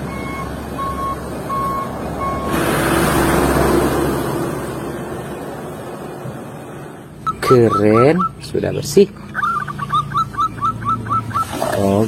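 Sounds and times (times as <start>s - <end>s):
truck reversing beeper: 0.0s - 4.0s, 7.2s - 11.6s.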